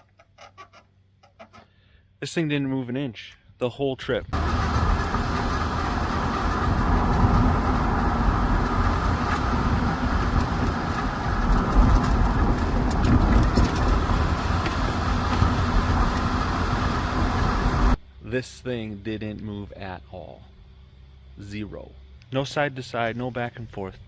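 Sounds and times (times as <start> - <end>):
tyre and wind noise: 4.3 - 18.0
vehicle engine rumble: 4.3 - 22.3.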